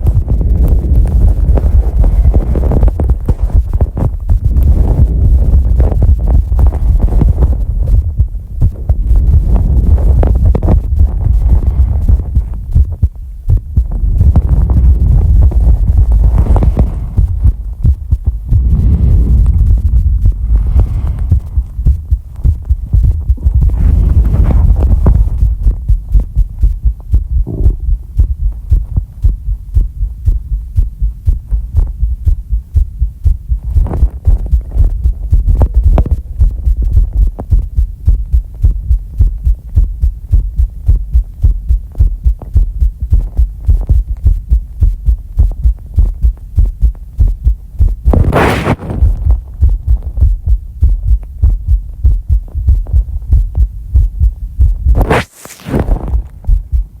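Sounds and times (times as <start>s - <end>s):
heartbeat thumps: 0.0s - 57.0s.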